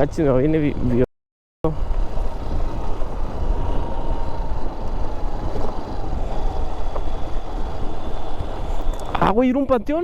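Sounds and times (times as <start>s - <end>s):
motorcycle engine running: 1.7s - 9.4s
wind over microphone: 1.7s - 10.0s.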